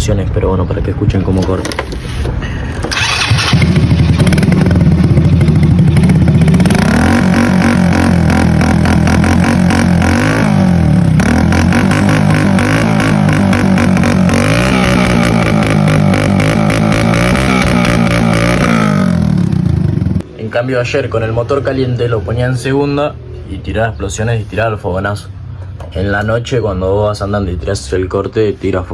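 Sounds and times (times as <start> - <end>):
motorcycle engine revving: 2.8 - 20.3.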